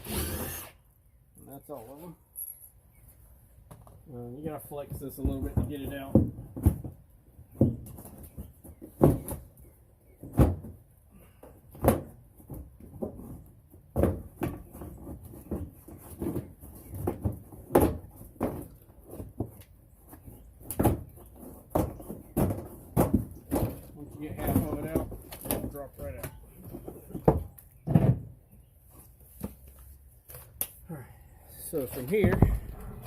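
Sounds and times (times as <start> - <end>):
knocks clicks and clunks: 32.0 - 33.0.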